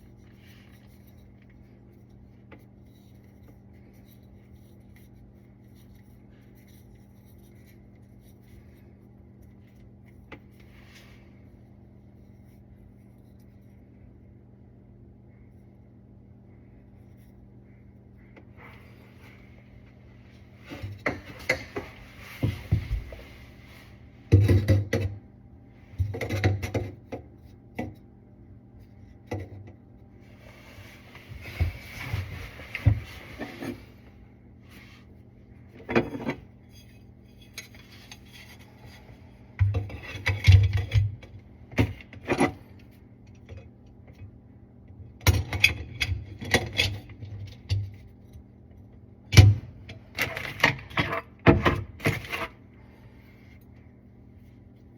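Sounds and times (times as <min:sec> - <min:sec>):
scraping: 0:30.2 - 0:40.7.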